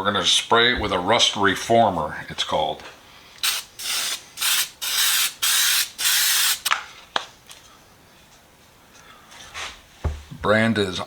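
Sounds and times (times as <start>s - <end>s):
aerosol can spraying: 3.4s - 6.7s.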